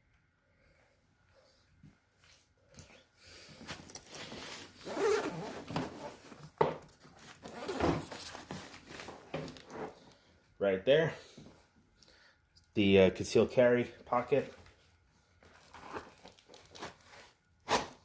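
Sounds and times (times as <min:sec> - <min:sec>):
bag fabric rustling: 0:03.6 - 0:06.4
zipper being pulled: 0:04.8 - 0:06.2.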